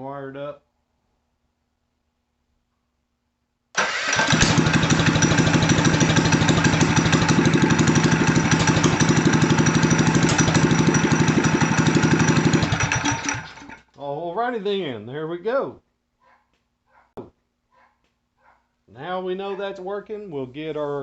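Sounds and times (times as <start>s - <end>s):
small engine running: 3.8s - 13.8s.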